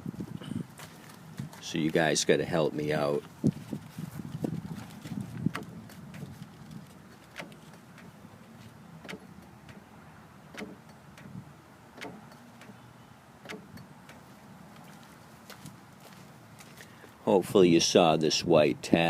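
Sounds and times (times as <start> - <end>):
door lock actuator clicking: 10.5 - 11.4, 12.0 - 12.8.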